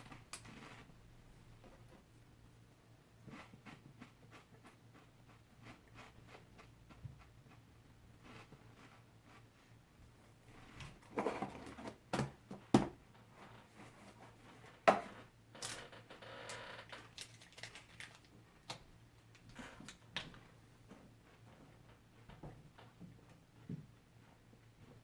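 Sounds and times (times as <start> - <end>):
crunching potato crisps: 16.9 - 20.0.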